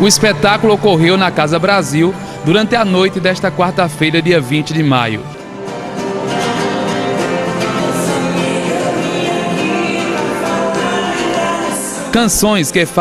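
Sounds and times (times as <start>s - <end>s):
ensemble playing held notes: 0.0s - 12.3s
person singing: 7.1s - 13.0s.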